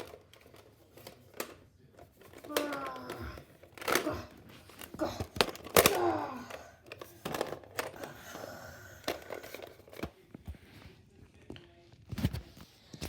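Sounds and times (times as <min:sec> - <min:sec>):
clicks and crinkling rustles: 0:00.0 - 0:08.2, 0:09.0 - 0:13.0.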